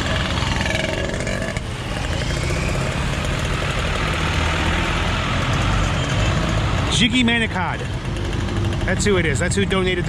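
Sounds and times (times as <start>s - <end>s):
vehicle engines idling: 0.0s - 10.0s.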